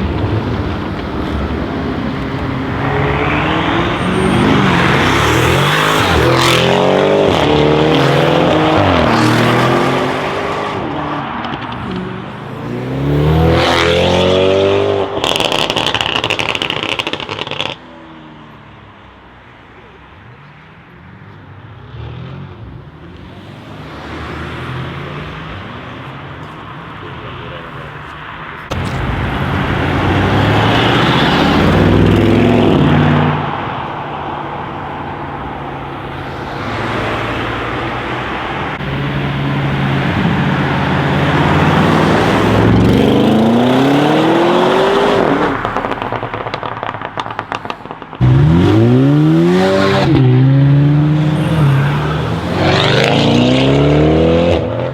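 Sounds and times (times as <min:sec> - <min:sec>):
exhaust crackles: 0:00.0 - 0:09.5, 0:28.6 - 0:53.8
car engine revving and accelerating: 0:00.0 - 0:17.8, 0:28.7 - 0:54.9.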